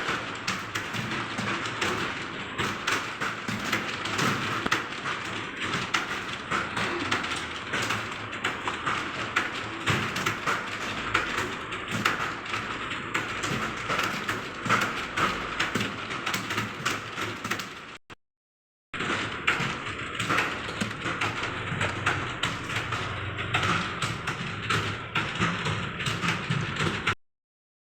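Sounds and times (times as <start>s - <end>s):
fast keyboard typing: 0.0s - 18.0s, 19.0s - 27.2s.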